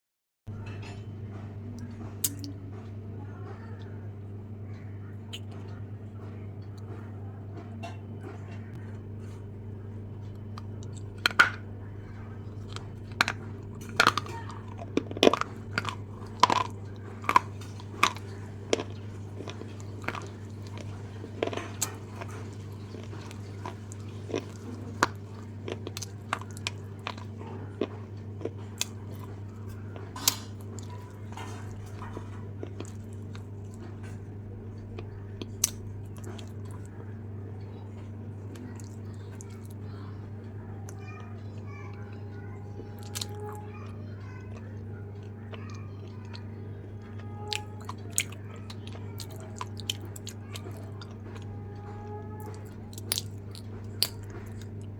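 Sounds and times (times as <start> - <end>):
apple crunching: 12.4 - 34.1, 35.0 - 36.9, 43.0 - 43.7, 52.3 - 54.9.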